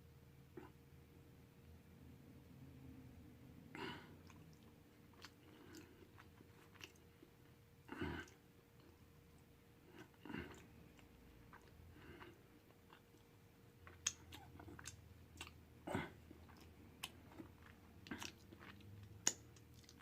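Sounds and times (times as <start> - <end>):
person chewing food: 3.8 - 20.0
wet mouth clicks: 16.5 - 20.0.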